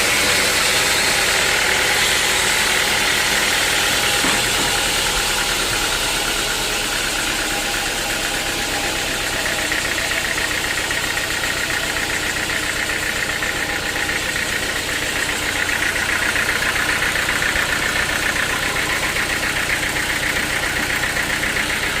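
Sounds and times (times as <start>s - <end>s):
sawmill engine running: 0.0s - 22.0s.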